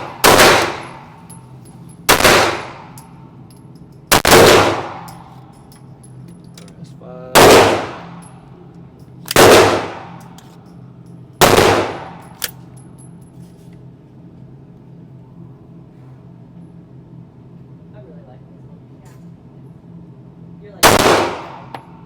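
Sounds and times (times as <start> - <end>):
pistol shots: 0.0 - 1.0, 2.1 - 2.9, 4.1 - 5.1, 7.4 - 8.1, 9.4 - 10.2, 11.4 - 12.2, 20.8 - 21.7.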